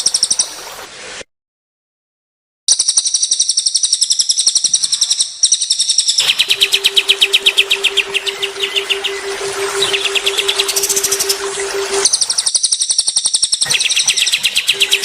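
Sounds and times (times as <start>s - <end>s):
steady low hum: 6.2s - 12.4s
songbirds rapid trills: 6.2s - 12.8s, 13.6s - 15.0s.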